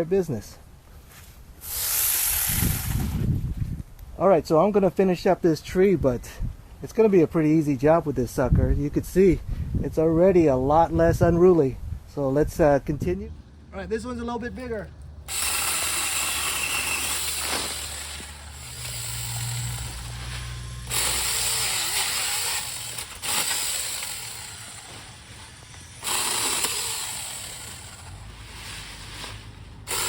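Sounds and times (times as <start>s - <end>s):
mini chainsaw cutting branch: 1.6s - 3.3s, 15.3s - 30.0s.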